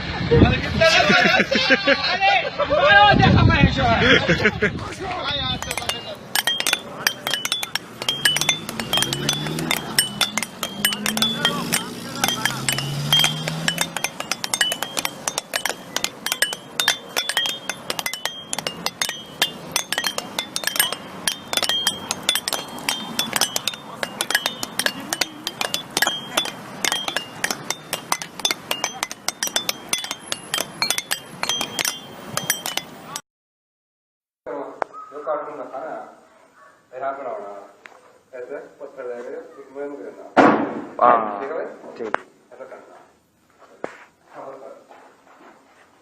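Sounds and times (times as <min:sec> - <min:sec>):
hard objects clinking and knocking: 0:05.4 - 0:33.2
short metallic ring: 0:05.6 - 0:33.2.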